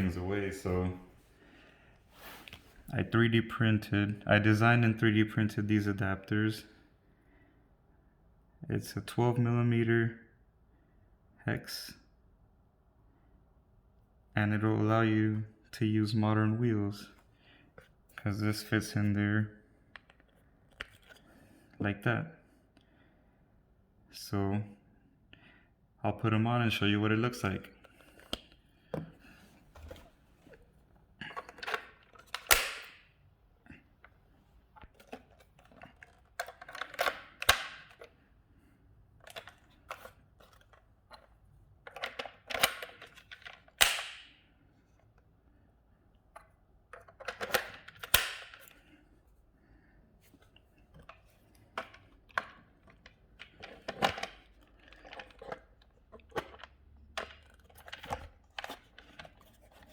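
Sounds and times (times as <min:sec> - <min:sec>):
plastic clicks and snaps: 0:31.2 - 0:33.1, 0:34.8 - 0:38.1, 0:41.9 - 0:44.4, 0:46.4 - 0:48.9.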